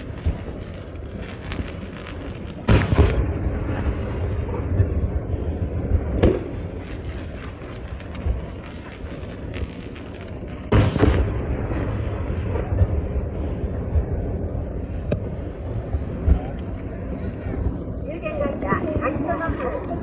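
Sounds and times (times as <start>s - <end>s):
firework crackling: 0.0s - 20.0s
firework shell booms: 0.0s - 20.0s
low rolling rumble: 10.6s - 20.0s.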